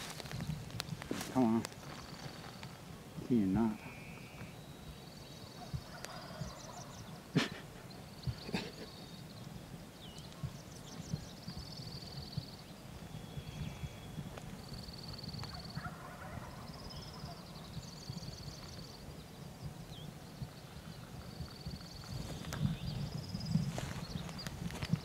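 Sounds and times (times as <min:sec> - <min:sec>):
songbirds singing trills: 0:00.0 - 0:25.0
distant turkey gobbling: 0:15.4 - 0:17.5.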